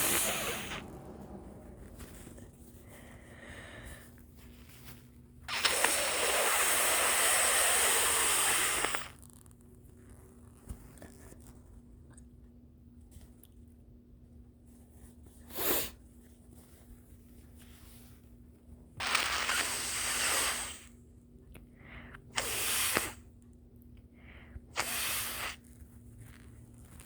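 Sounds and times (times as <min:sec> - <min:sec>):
nose blowing into tissue: 0:00.0 - 0:04.0, 0:05.5 - 0:09.2, 0:19.0 - 0:21.0, 0:22.3 - 0:23.3, 0:24.7 - 0:25.8.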